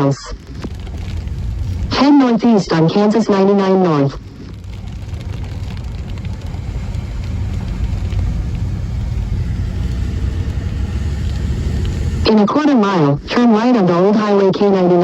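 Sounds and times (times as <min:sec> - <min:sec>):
car cabin road and engine rumble: 0:00.0 - 0:15.0.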